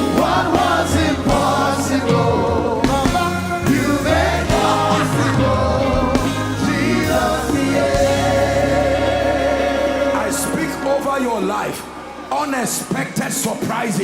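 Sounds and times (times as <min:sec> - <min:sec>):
gospel band with singing: 0:00.0 - 0:14.0.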